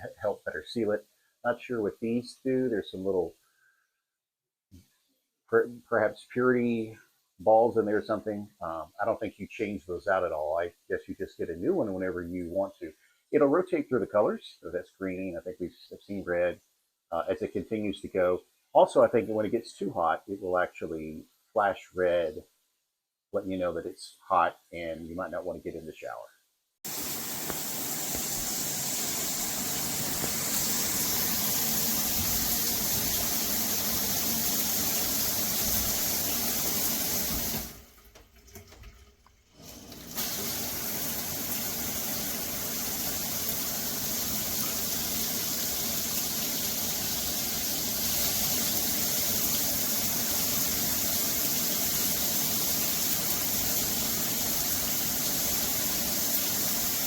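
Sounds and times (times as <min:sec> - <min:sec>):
water spraying from shower head: 0:26.9 - 0:38.8, 0:39.6 - 0:57.0.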